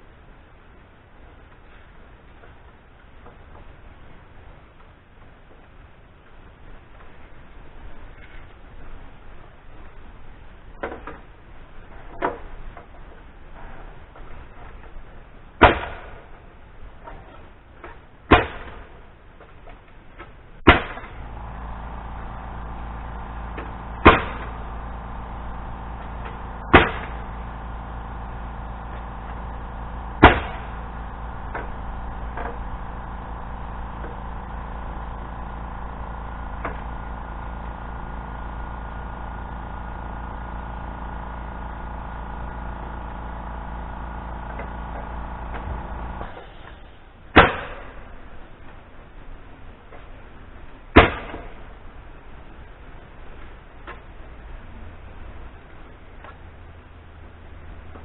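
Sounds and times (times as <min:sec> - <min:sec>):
pneumatic nail gun firing: 0:15.6 - 0:16.4, 0:18.3 - 0:19.0, 0:20.6 - 0:21.3, 0:22.2 - 0:48.2, 0:50.9 - 0:51.7
air compressor humming: 0:20.7 - 0:46.9.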